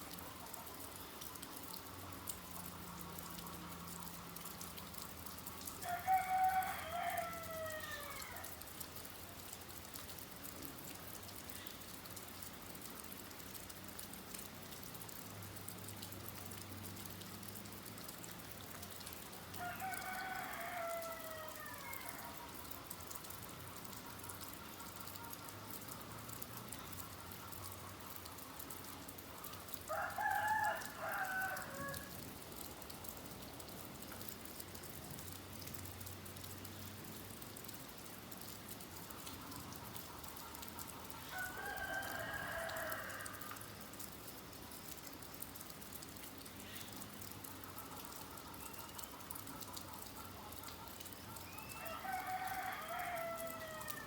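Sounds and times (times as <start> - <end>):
steady rain falling: 0.0 - 54.0
rooster crowing: 5.8 - 8.6, 19.6 - 22.3, 29.9 - 32.1, 41.3 - 43.7, 51.5 - 54.0.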